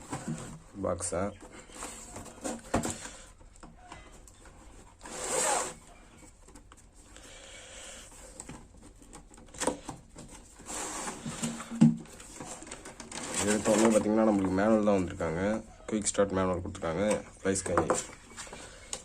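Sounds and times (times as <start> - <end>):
packaging rustling: 8.1 - 14.9.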